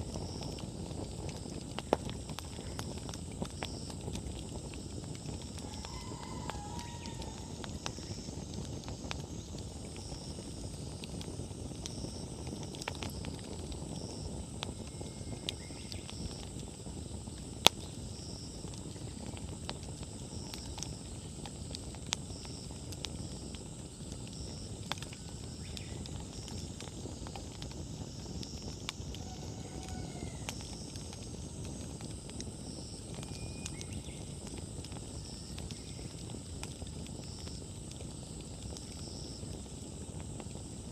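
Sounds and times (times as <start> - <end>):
fire crackling: 0.0 - 40.9
flames rustling: 0.0 - 40.9
loud pop from fire: 0.0 - 40.9.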